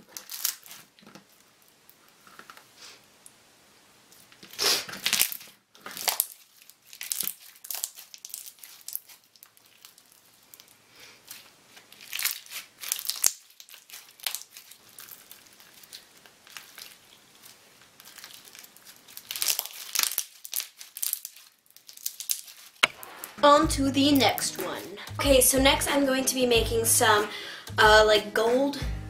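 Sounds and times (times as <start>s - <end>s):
slime beads crunching: 0.0s - 1.0s, 4.9s - 25.0s.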